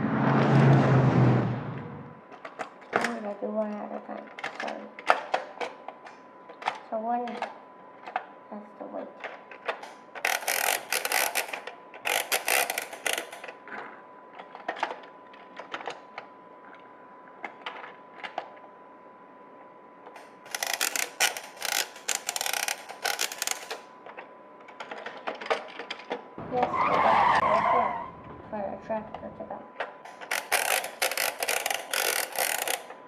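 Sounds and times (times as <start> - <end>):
toy cars clicking on plastic ramps: 9.2 - 13.6, 20.1 - 27.0, 30.1 - 33.0.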